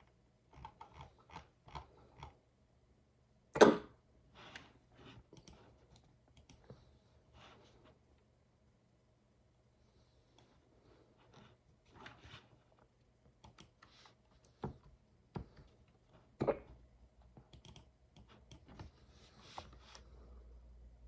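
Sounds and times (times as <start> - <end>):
typing on computer keyboard: 13.4 - 13.8, 17.5 - 18.8.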